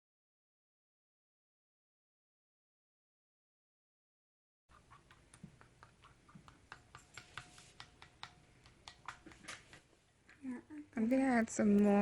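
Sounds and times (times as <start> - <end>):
spoon tapping bowl: 5.5 - 9.3.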